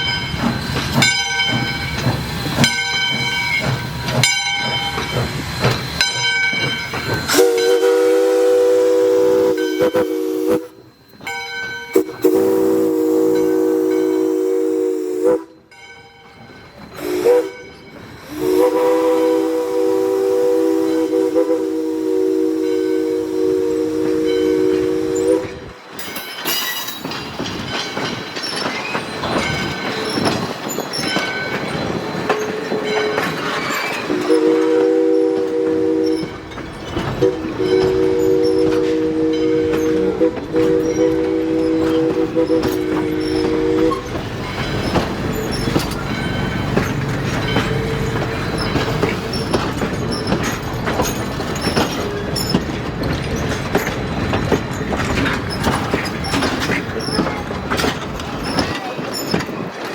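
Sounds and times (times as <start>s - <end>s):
train rumbling on track: 0.0s - 59.9s
steam whistle blasts: 7.2s - 10.9s, 11.9s - 15.7s, 17.0s - 25.7s, 34.1s - 36.4s, 37.2s - 44.2s.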